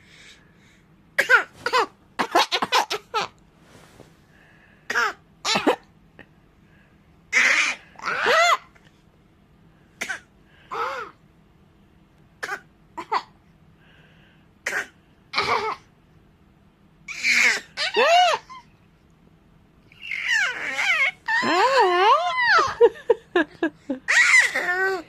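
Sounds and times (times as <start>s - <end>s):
child coughing playfully: 1.2s - 3.2s, 4.9s - 5.9s, 14.7s - 15.9s.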